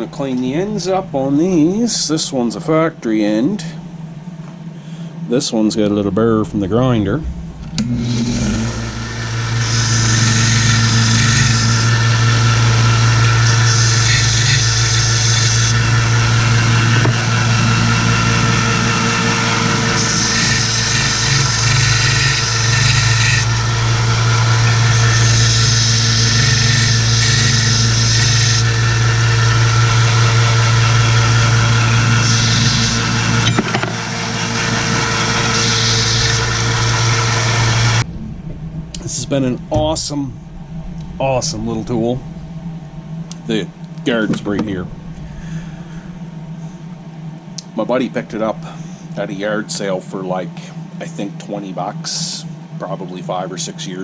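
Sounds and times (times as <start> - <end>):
bench grinder motor hum: 7.6 - 38.1
grinding hiss on steel rod: 8.4 - 33.8, 34.4 - 38.0.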